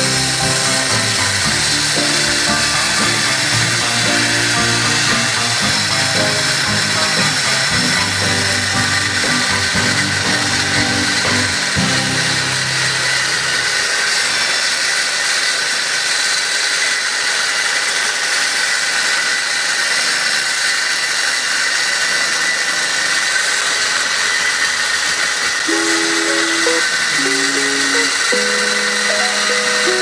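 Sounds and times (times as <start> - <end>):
music notes: 0.0 - 14.0, 25.7 - 30.0
loud steady hiss: 0.0 - 15.0, 25.2 - 30.0.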